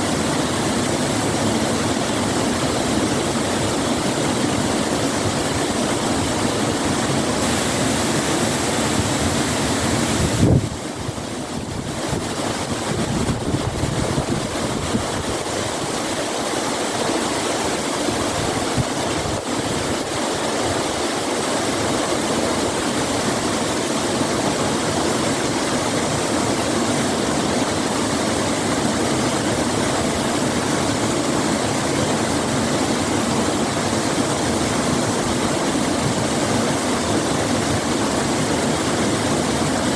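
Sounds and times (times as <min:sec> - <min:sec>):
rush of falling water: 0:00.0 - 0:39.9.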